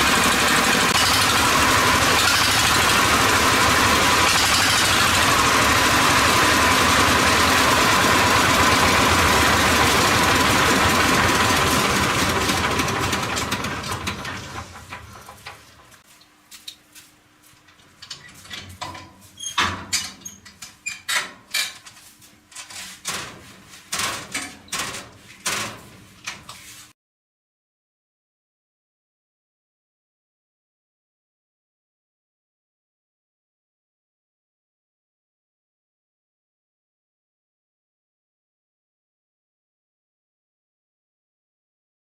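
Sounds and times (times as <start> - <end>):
motor running: 0.0 - 14.9.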